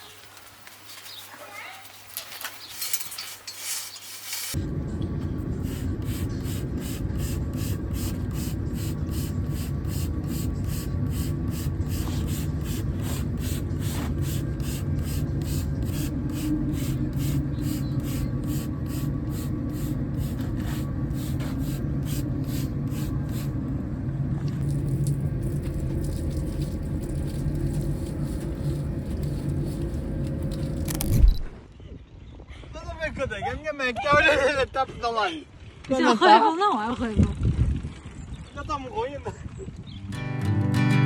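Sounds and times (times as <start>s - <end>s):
low rumble of a ride: 4.5s - 33.9s, 34.9s - 40.6s
wind noise: 36.9s - 40.1s.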